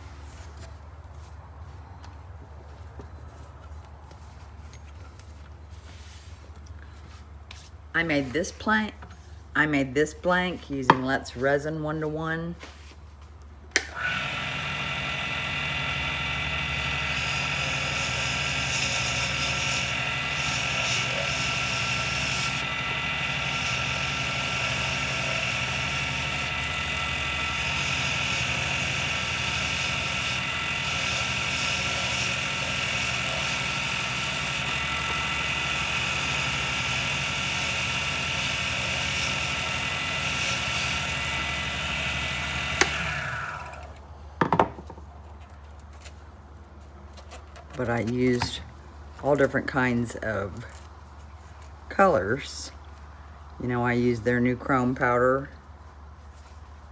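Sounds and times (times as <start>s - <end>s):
lathe humming with high hiss: 13.9s - 44.0s.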